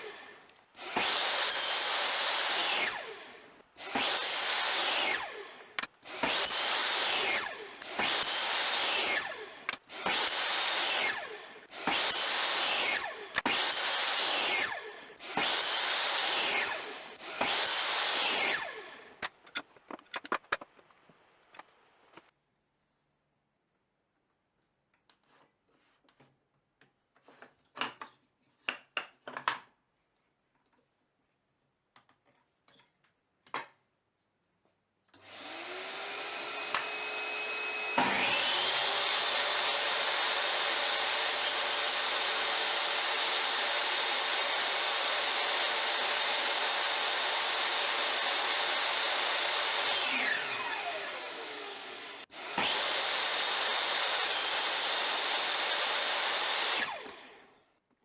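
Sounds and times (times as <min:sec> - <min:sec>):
power tool motor whining: 0:35.2 - 0:57.5.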